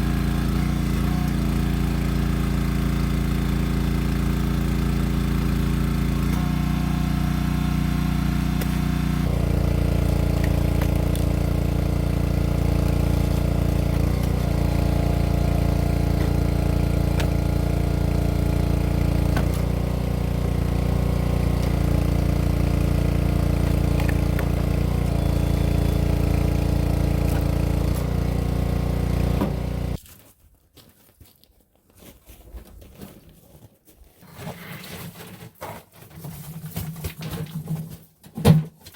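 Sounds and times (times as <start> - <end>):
small gasoline engine running: 0.0 - 30.0.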